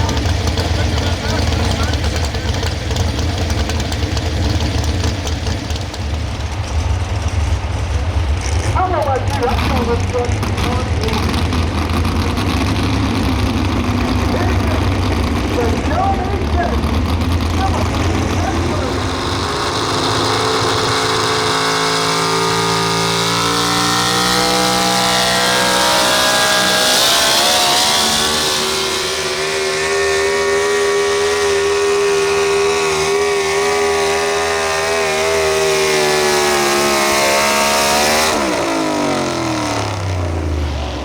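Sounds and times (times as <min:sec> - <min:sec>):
truck engine at full throttle: 0:00.0 - 0:41.0.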